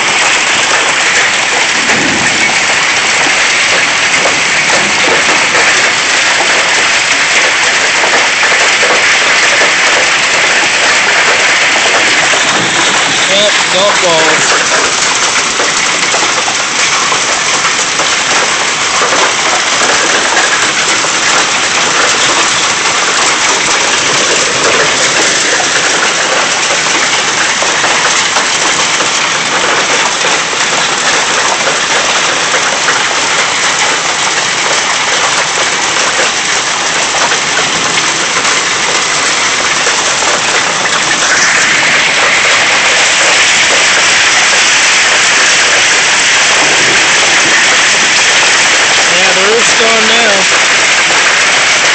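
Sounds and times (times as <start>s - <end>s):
heavy rain and hail: 0.0s - 51.9s.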